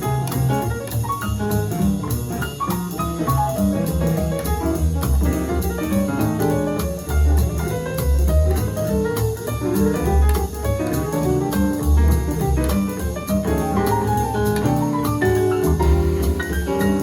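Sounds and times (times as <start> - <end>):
jazz piano trio: 0.0 - 17.0
walking bass line: 0.0 - 17.0.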